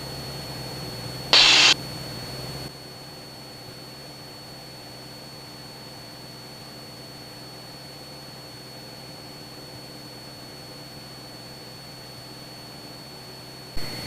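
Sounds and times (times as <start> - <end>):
aircraft engine drone: 1.3 - 1.8
hiss: 1.3 - 1.8.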